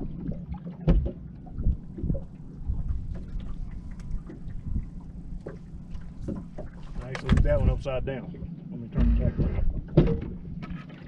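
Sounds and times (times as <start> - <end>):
low wind rumble: 0.0 - 10.7
water slapping against hull: 0.0 - 11.0
short knocks: 9.0 - 10.4.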